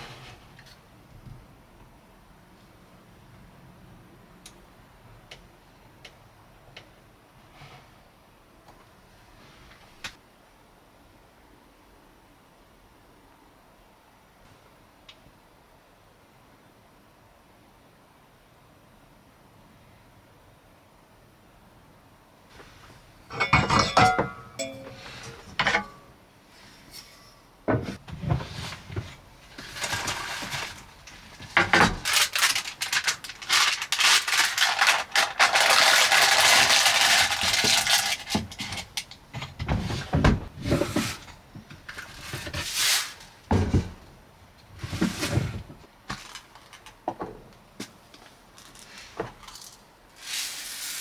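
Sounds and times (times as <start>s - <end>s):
objects clinking and knocking: 23.3s - 26.1s
steady hiss: 50.1s - 51.0s.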